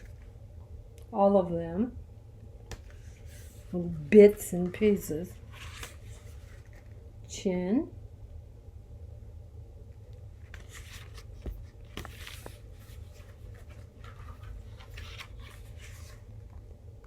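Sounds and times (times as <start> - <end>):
steady low hum: 0.0 - 17.0
pages rustling: 2.7 - 7.0, 10.4 - 16.7.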